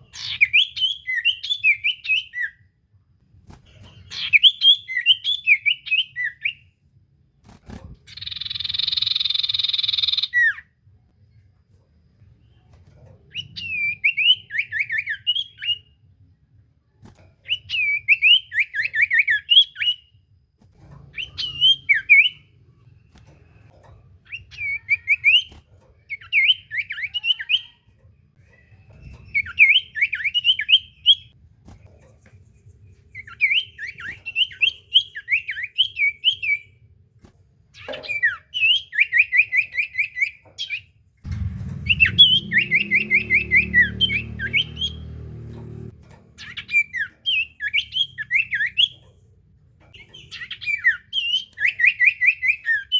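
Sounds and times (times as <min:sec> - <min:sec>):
bird chattering song: 0:00.0 - 0:02.5, 0:08.1 - 0:10.6, 0:46.4 - 0:49.2, 0:50.0 - 0:52.9.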